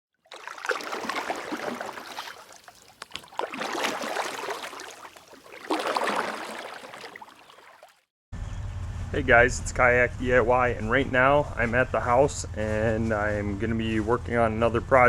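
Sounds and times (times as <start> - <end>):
crackling and gurgling water: 0.2 - 8.0
water splashing and sloshing: 0.2 - 8.1.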